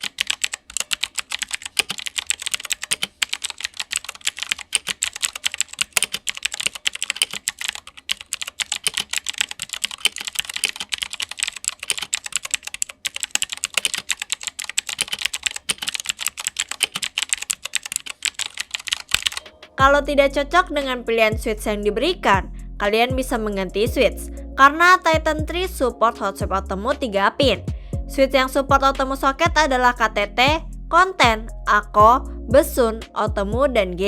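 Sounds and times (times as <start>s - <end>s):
fast mechanical keyboard typing: 0.0s - 19.7s.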